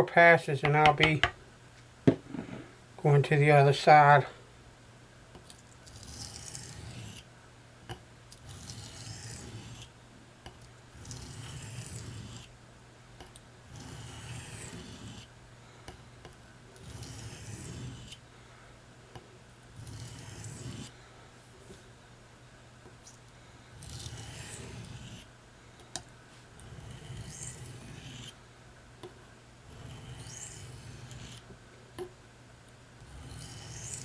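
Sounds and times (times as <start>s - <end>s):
knife scraping on sharpening stone: 29.7s - 31.4s.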